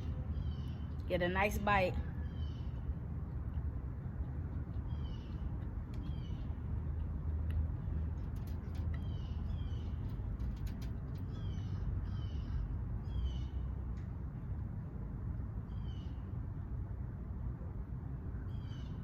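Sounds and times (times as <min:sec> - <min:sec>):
steady low rumble: 0:00.0 - 0:19.0
bird chirping: 0:02.2 - 0:02.9, 0:04.8 - 0:06.6.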